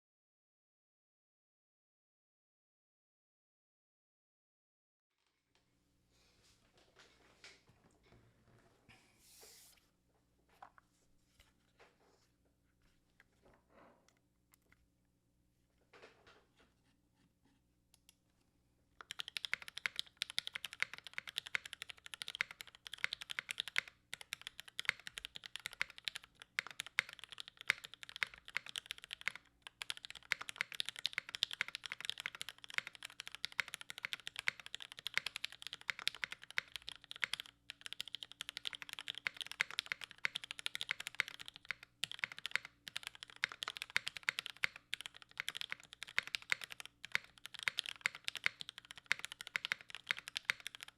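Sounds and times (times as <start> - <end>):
fast typing on mechanical keyboard: 19.0 - 50.9.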